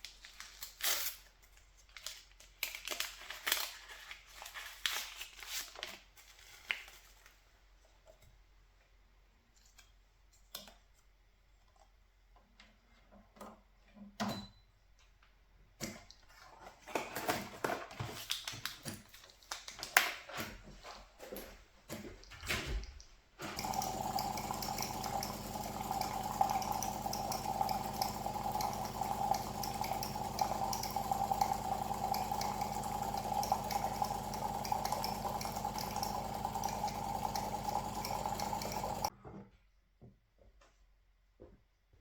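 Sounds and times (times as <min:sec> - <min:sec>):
running water: 0:23.6 - 0:39.1.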